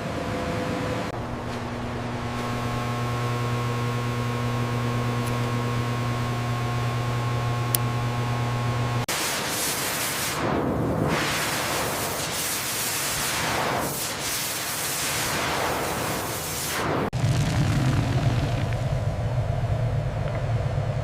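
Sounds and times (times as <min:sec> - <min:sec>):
machine hum with tones: 0:00.0 - 0:09.1, 0:18.0 - 0:21.0.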